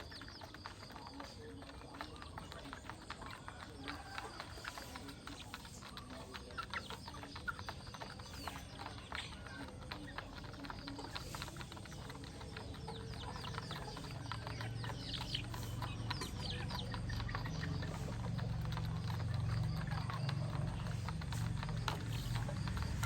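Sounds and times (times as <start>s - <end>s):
chickens pecking at feed: 0.0s - 23.0s
chickens peeping: 0.0s - 23.0s.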